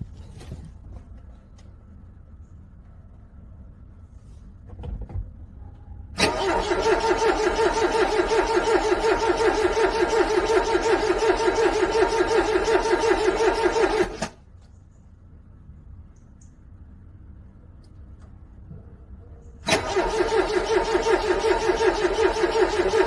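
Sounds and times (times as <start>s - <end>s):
car starter motor cranking: 6.2s - 14.4s, 19.6s - 23.0s.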